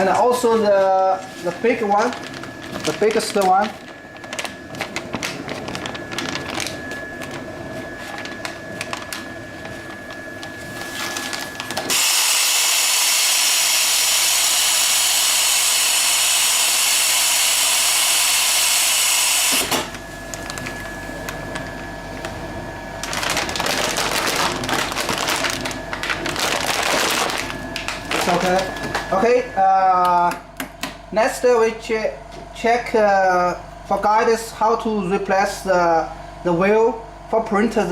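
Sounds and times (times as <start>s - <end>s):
sealer machine whine and rattle: 0.0s - 37.9s
bag crackling rustle: 1.2s - 11.9s, 23.0s - 29.1s.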